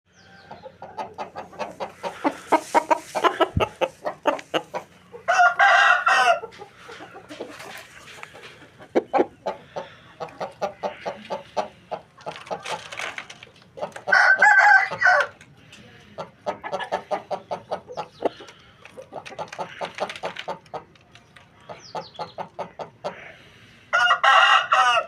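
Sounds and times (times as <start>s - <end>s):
chickens clucking: 0.1s - 25.0s
rooster crowing: 5.3s - 6.5s, 14.1s - 15.4s, 23.9s - 25.0s.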